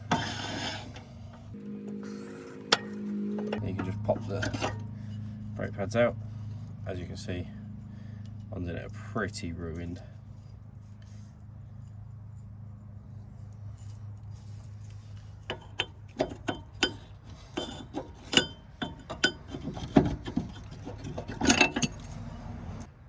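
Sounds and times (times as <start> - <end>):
steady low hum: 0.0 - 22.9
metallic clinks of brake parts: 15.2 - 22.5.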